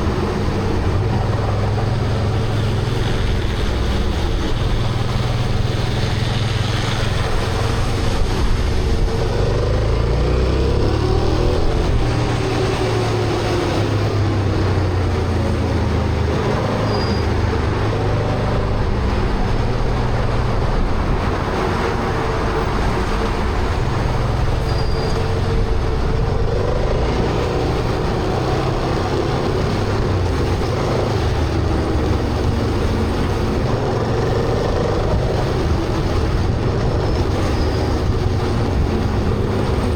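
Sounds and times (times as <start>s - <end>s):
wind and road noise: 0.0s - 39.9s
motorcycle engine running: 25.2s - 39.9s.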